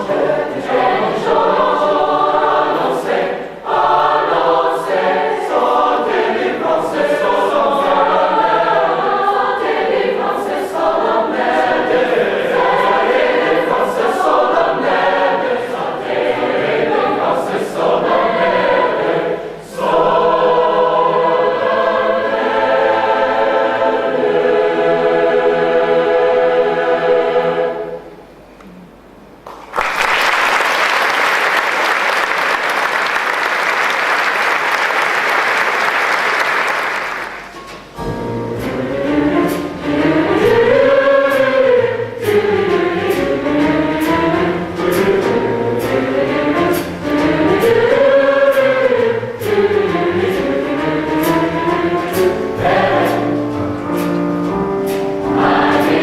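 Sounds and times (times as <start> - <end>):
choir singing: 0.0 - 28.3, 36.3 - 54.2, 54.9 - 56.0
audience applauding: 29.4 - 37.6.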